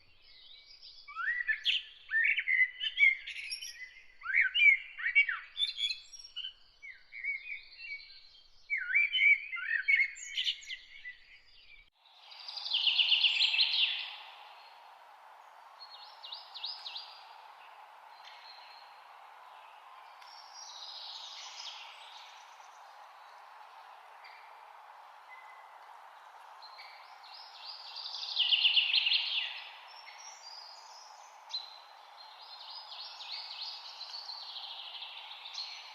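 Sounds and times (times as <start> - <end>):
songbirds chirping: 0.0 - 35.9
steady rushing hiss: 12.0 - 35.9.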